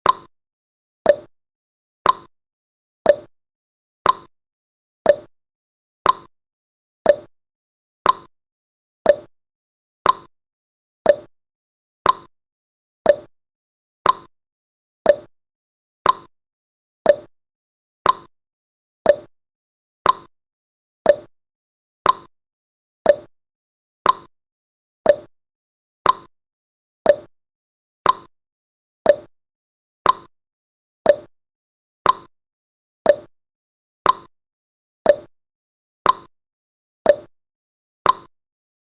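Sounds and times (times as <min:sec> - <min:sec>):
timer tick-tock clicks: 0:00.0 - 0:00.3, 0:01.0 - 0:01.3, 0:02.0 - 0:02.3, 0:03.0 - 0:03.3, 0:04.0 - 0:04.3, 0:05.0 - 0:05.3, 0:06.0 - 0:06.3, 0:07.0 - 0:07.4, 0:08.0 - 0:08.3, 0:09.0 - 0:09.4, 0:10.0 - 0:10.3, 0:11.0 - 0:11.4, 0:12.0 - 0:12.3, 0:13.0 - 0:13.4, 0:14.0 - 0:14.3, 0:15.0 - 0:15.4, 0:16.0 - 0:16.3, 0:17.0 - 0:17.4, 0:18.0 - 0:18.3, 0:19.0 - 0:19.4, 0:20.0 - 0:20.3, 0:21.0 - 0:21.4, 0:22.0 - 0:22.3, 0:23.0 - 0:23.4, 0:24.0 - 0:24.3, 0:25.0 - 0:25.4, 0:26.0 - 0:26.4, 0:27.0 - 0:27.4, 0:28.0 - 0:28.4, 0:29.0 - 0:29.4, 0:30.0 - 0:30.4, 0:31.0 - 0:31.4, 0:32.0 - 0:32.4, 0:33.0 - 0:33.4, 0:34.0 - 0:34.4, 0:35.0 - 0:35.4, 0:36.0 - 0:36.4, 0:37.0 - 0:37.4, 0:38.0 - 0:38.4.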